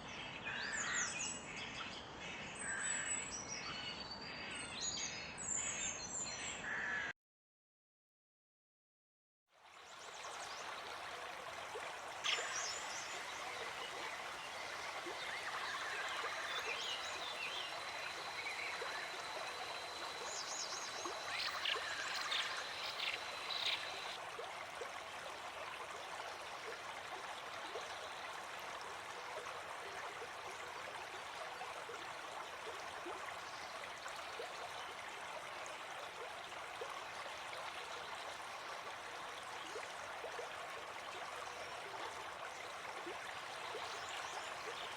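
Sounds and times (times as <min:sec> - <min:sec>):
stream water flowing: 0:09.5 - 0:44.9
thin steady whistling tone: 0:12.3 - 0:24.2.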